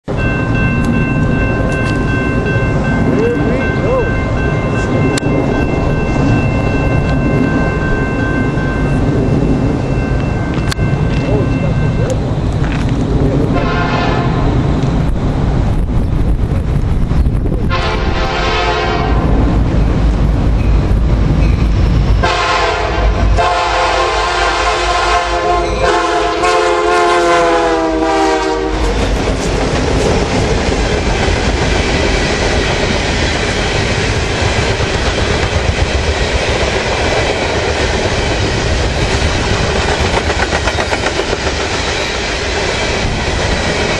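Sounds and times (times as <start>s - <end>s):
diesel engines rumbling: 0.7s - 17.7s
train wheels clicking over rail joints: 12.0s - 13.6s, 28.8s - 43.9s
locomotive air horn blasts: 13.5s - 14.4s, 17.7s - 19.3s, 22.2s - 29.0s.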